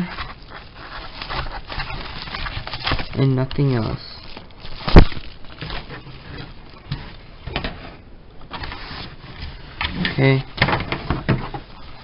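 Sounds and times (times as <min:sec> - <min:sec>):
packaging rustling: 0:00.0 - 0:07.5.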